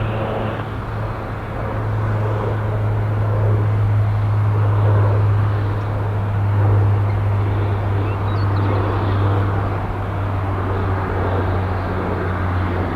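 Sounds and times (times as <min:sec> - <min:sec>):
jet engine roar: 0:00.0 - 0:12.9.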